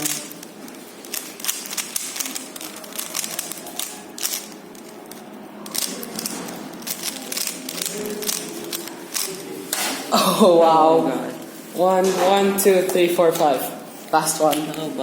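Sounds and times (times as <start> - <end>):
plastic puzzle cube clicking: 0.0 - 9.4.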